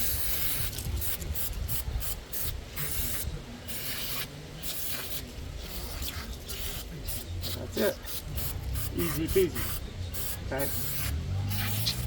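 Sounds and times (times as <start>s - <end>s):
aerosol can spraying: 0.0s - 12.0s.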